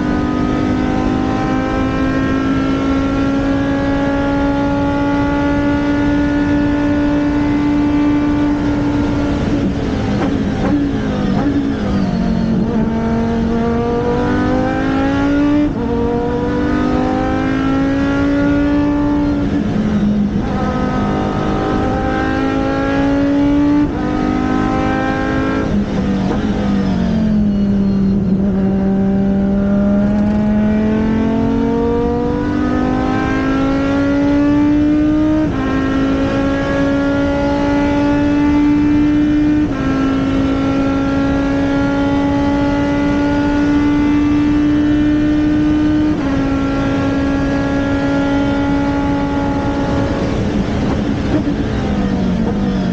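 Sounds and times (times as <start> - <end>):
race car engine revving: 0.0 - 52.9.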